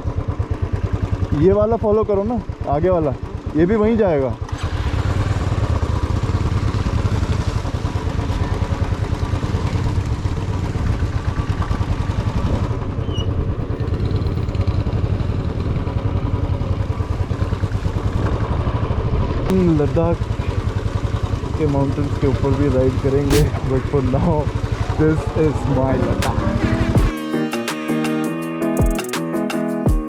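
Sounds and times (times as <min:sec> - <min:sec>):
motorcycle engine running: 0:00.0 - 0:27.2
road and wind noise: 0:04.4 - 0:27.1.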